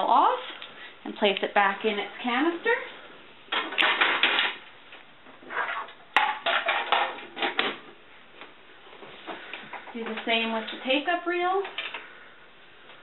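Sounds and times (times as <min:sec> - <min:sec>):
film reel clattering and knocking: 0:06.2 - 0:07.8.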